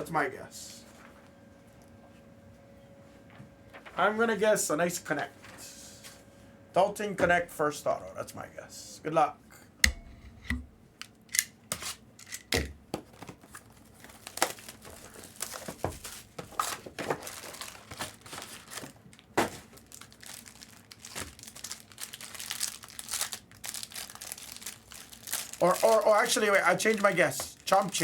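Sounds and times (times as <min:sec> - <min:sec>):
plastic wrappers tearing and crinkling: 0:13.4 - 0:28.0.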